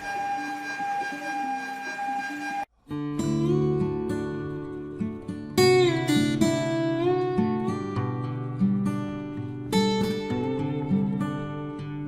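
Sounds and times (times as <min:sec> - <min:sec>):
music with plucked notes: 0:02.9 - 0:12.0.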